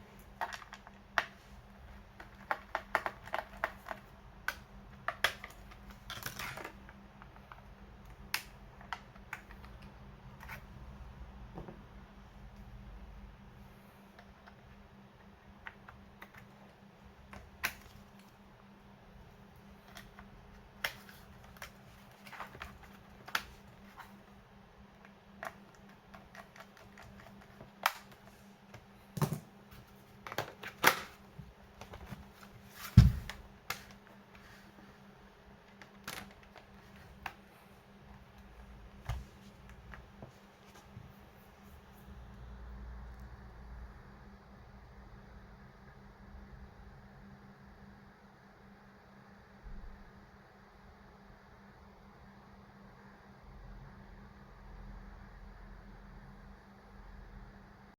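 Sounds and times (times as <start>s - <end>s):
hands tapping plastic laptop case: 2.2s - 7.4s
heavy thump: 32.9s - 33.4s.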